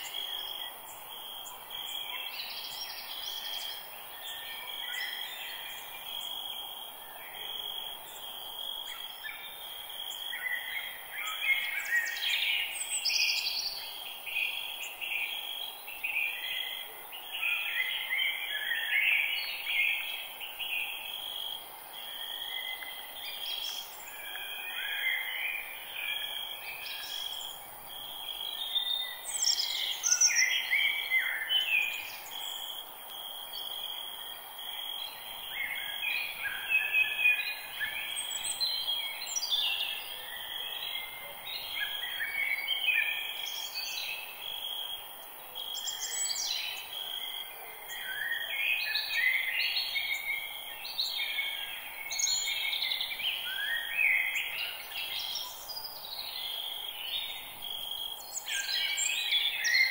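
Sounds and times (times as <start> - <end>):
birds singing and calling: 0.0 - 6.5, 7.3 - 21.1, 28.4 - 32.8, 45.7 - 59.9.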